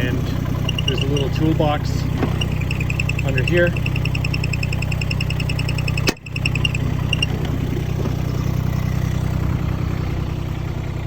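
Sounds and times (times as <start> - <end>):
diesel engine idling: 0.0 - 11.0
rapid high electronic beeping: 0.7 - 1.3, 2.4 - 7.3
sharp click: 2.2 - 7.3.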